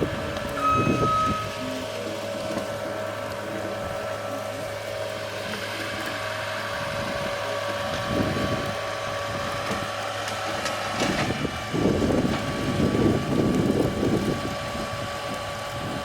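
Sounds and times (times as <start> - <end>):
machine engine running: 0.0 - 16.0
wood and brush breaking: 9.6 - 12.8.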